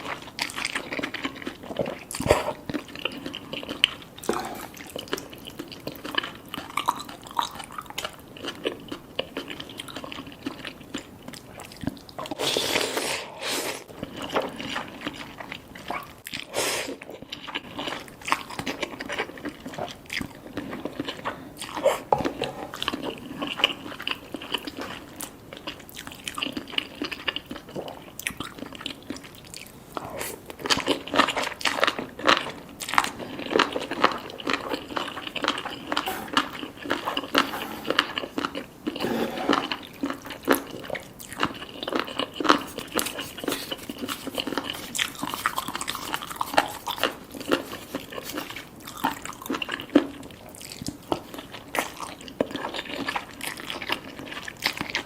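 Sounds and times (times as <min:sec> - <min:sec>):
chewing noodles: 0:00.0 - 0:55.0.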